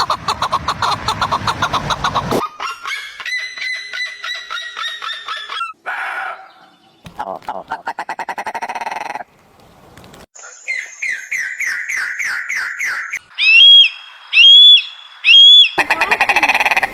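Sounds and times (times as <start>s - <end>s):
bird calling: 0.0s - 9.8s, 10.4s - 16.9s
bird whistles rising: 10.4s - 15.8s.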